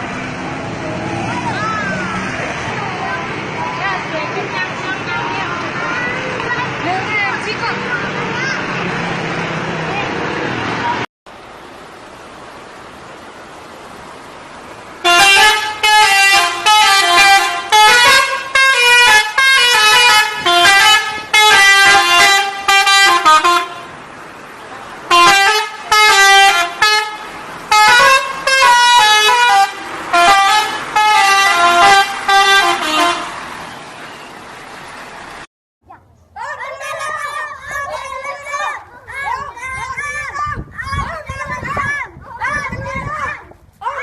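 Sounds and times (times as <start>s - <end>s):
bus musical horn honking: 15.0s - 24.0s, 25.1s - 34.4s.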